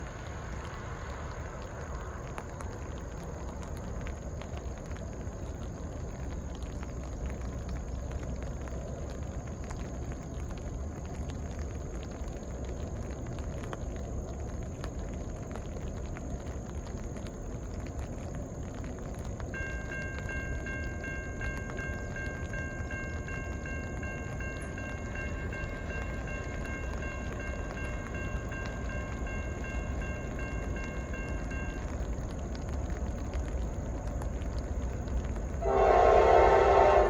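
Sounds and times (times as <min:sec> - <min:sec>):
light drizzle with ticking drops: 0:00.0 - 0:37.0
steady low rumble: 0:00.0 - 0:37.0
thin steady high tone: 0:19.4 - 0:37.0.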